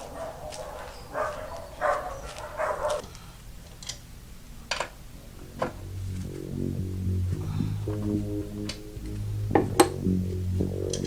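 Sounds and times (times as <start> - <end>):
dogs barking: 0.0 - 3.0.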